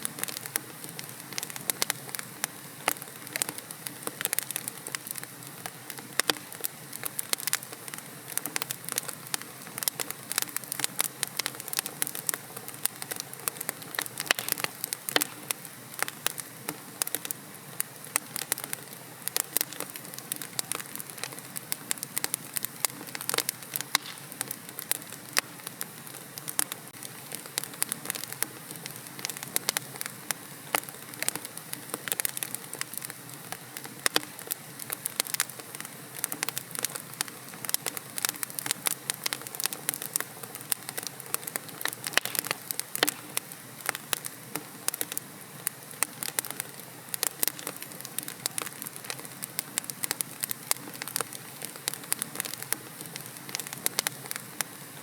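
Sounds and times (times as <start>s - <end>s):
wood fire crackling: 0.0s - 55.0s.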